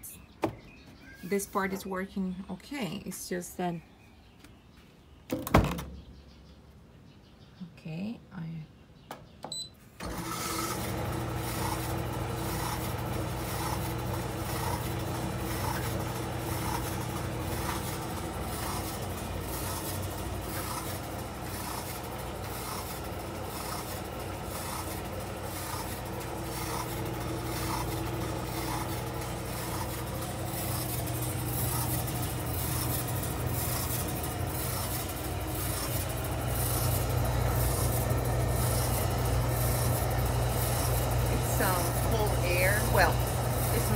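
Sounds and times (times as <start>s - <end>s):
tumble dryer motor humming: 10.0s - 43.9s.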